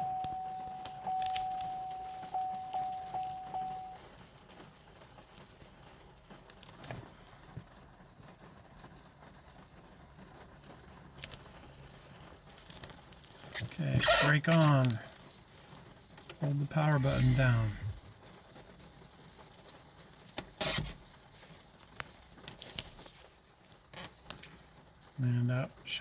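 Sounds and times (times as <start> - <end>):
car warning chime ding: 0.0 - 4.0.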